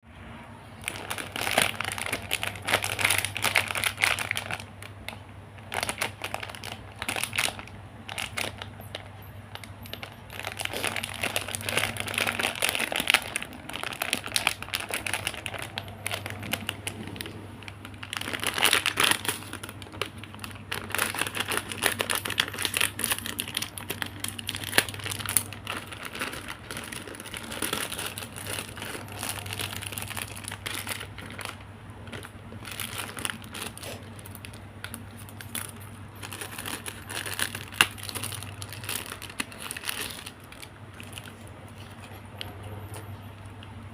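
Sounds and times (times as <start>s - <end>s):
packaging crinkling: 0.8s - 43.6s.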